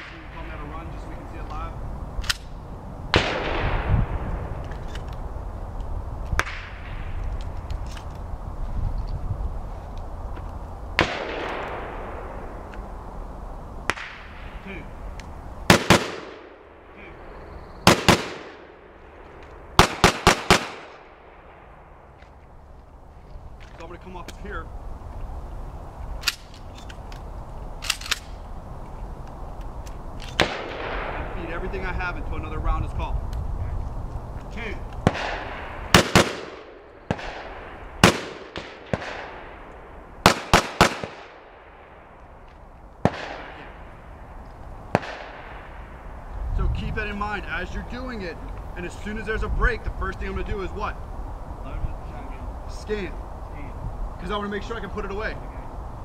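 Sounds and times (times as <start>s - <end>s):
faint distant gunshots: 3.1s - 4.6s, 11.0s - 12.6s, 13.9s - 14.8s, 17.8s - 22.1s, 30.4s - 31.8s, 35.0s - 42.1s, 43.0s - 44.1s, 44.9s - 46.1s
gunshots with echo: 17.8s - 18.9s, 19.8s - 21.7s, 35.0s - 39.6s, 44.9s - 45.8s.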